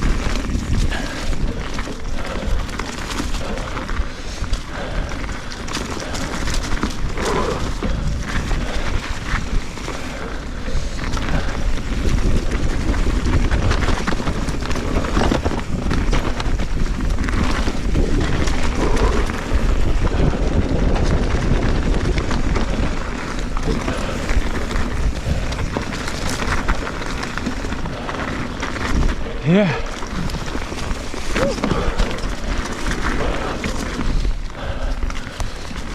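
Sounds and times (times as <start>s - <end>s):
bike tyres and frame clattering: 0.0s - 35.9s
wind buffeting microphone: 0.0s - 35.9s.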